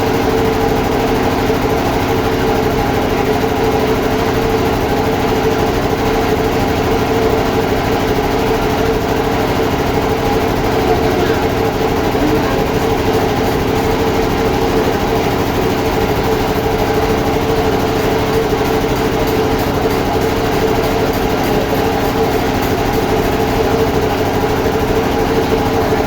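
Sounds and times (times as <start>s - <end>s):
sawmill machinery humming: 7.2s - 26.0s.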